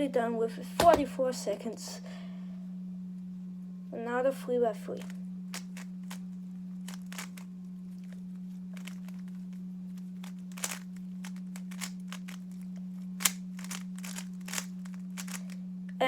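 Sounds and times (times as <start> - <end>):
steady low hum: 0.0 - 16.0
plastic cube clicking: 6.9 - 7.4, 10.5 - 12.4, 13.2 - 15.5.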